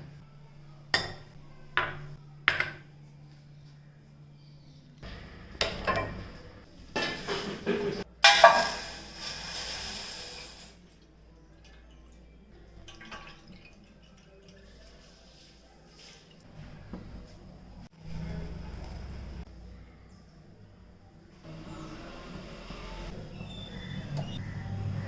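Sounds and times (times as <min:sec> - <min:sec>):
pots and utensils clinking: 0:05.6 - 0:06.3, 0:07.0 - 0:09.5.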